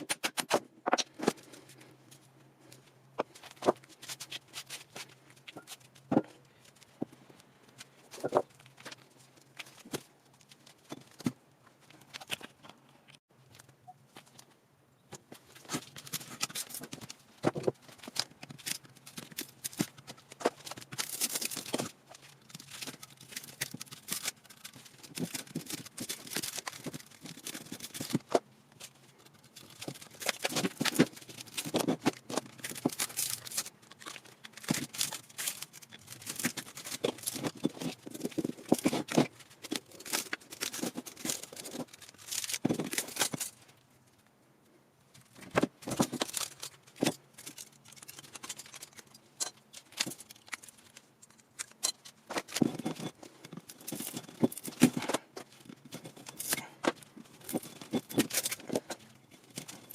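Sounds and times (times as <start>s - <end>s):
small metal parts clicking and rattling: 15.4s - 44.2s, 45.1s - 59.9s.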